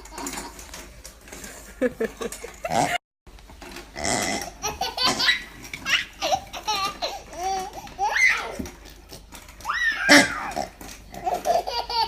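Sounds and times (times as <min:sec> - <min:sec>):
baby laughing: 0:00.0 - 0:00.7, 0:04.4 - 0:08.7, 0:09.7 - 0:12.0
fake fart noise by mouth: 0:02.7 - 0:03.0, 0:03.9 - 0:05.4, 0:10.0 - 0:11.4.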